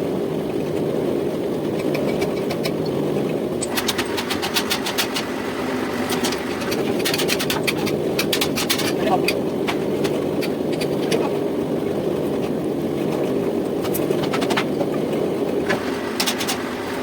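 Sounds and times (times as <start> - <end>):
metal lathe motor hum: 3.6 - 10.0, 15.6 - 17.0
sharp metallic clicks: 3.6 - 11.2.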